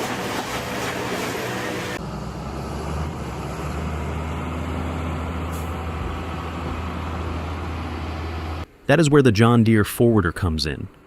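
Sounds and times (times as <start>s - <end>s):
heavy machine engine droning: 0.0s - 8.7s.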